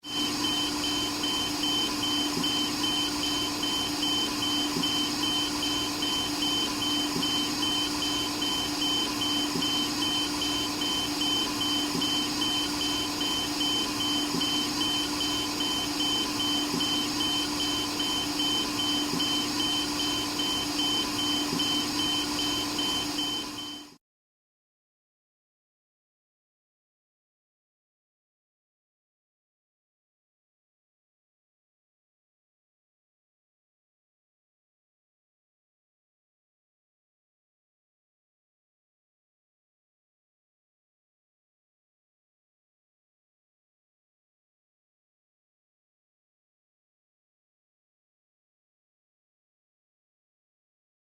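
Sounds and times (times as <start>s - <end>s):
ventilator alarm beeping: 0.0s - 24.0s.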